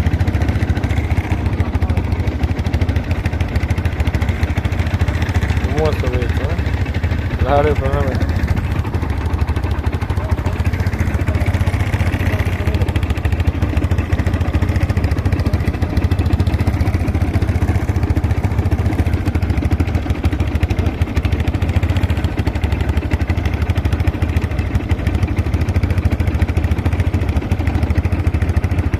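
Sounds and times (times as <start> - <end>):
engine running steadily: 0.0 - 28.9.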